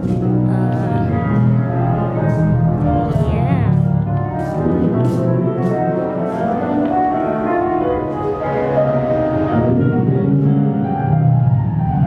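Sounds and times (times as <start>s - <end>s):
instrumental keyboard music: 0.0s - 12.0s.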